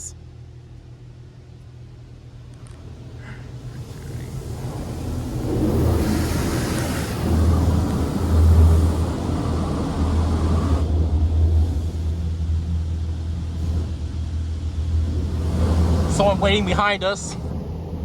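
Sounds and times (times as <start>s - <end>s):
car wash low rumble: 0.0s - 18.0s
spray hissing on car: 2.8s - 16.7s.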